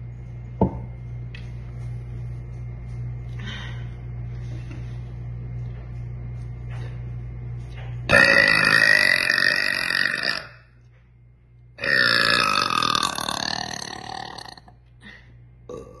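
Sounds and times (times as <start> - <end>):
girl burping: 15.7 - 16.0.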